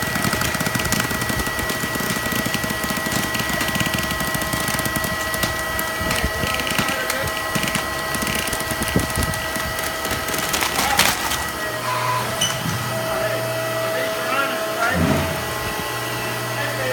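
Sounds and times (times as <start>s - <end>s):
baler crackling and crunching: 0.0s - 11.9s
machinery whine: 0.0s - 16.9s
steady low hum: 0.0s - 16.9s.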